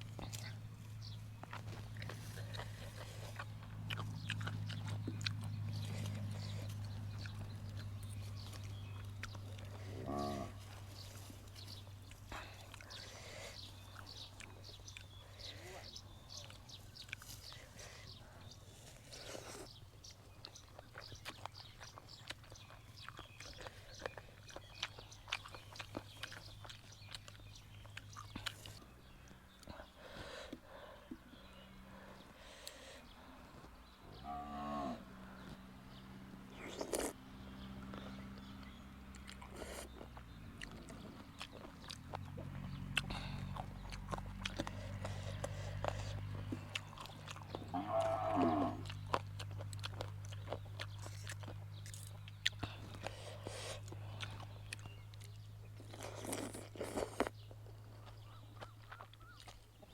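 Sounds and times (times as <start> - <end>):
person chewing crunchy food: 0.0 - 30.6, 36.5 - 37.2, 37.8 - 59.9
cow mooing: 9.9 - 10.6, 34.2 - 35.1, 47.7 - 48.9.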